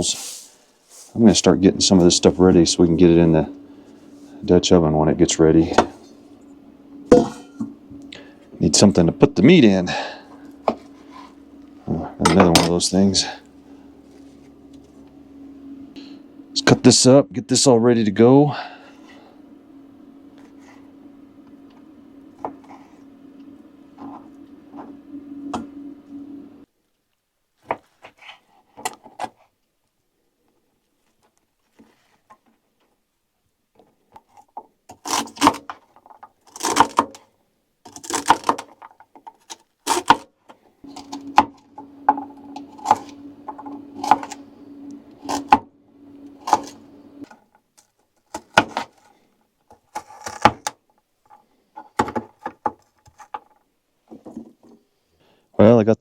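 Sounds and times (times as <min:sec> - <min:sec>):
steady low hum: 0:00.0 - 0:26.7, 0:39.9 - 0:52.4.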